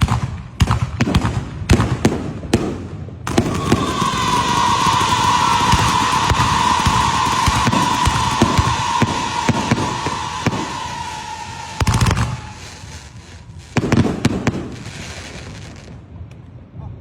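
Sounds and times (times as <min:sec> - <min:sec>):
fireworks crackling and bursting: 0:00.0 - 0:16.3
firework whistle: 0:03.3 - 0:15.9.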